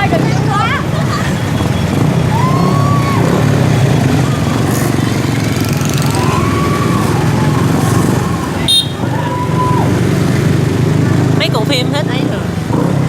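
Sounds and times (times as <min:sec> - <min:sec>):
motorbike traffic: 0:00.0 - 0:13.0
horn blowing: 0:08.6 - 0:09.1.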